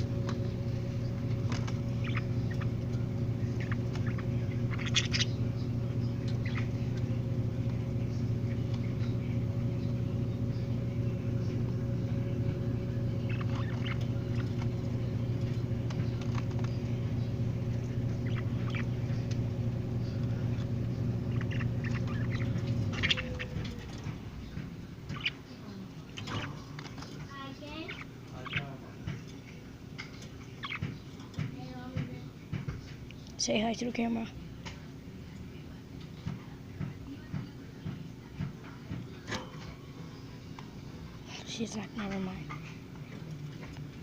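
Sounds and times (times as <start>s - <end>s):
motor humming: 0.0s - 33.3s
budgies chirping: 0.0s - 34.4s.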